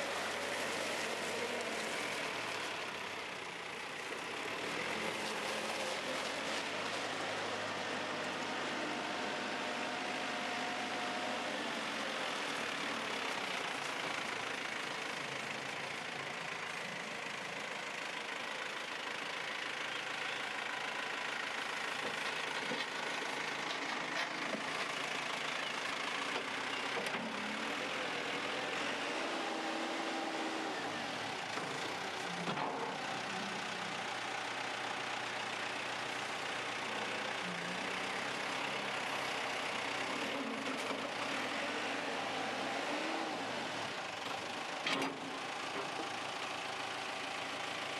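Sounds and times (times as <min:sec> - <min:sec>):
diesel engine running: 0:00.0 - 0:47.9.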